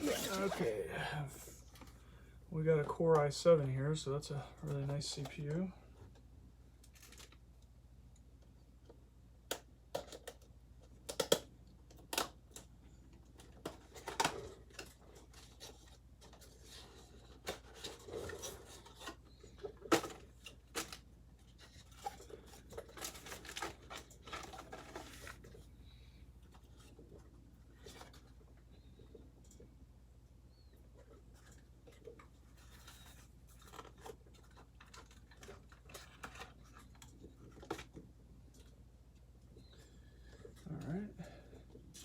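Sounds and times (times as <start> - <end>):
packaging rustling: 0.0 - 0.7, 13.8 - 25.7.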